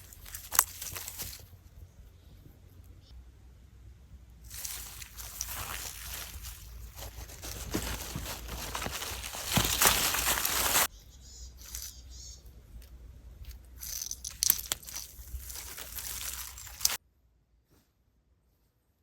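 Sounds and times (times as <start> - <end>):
rustling and crunching: 0.0 - 1.6, 4.5 - 10.9, 13.4 - 17.0.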